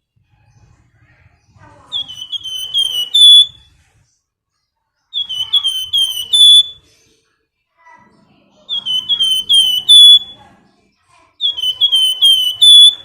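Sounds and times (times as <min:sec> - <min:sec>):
sunbird high whistled call: 0:01.9 - 0:03.6, 0:05.2 - 0:06.9, 0:08.7 - 0:10.4, 0:11.4 - 0:13.0.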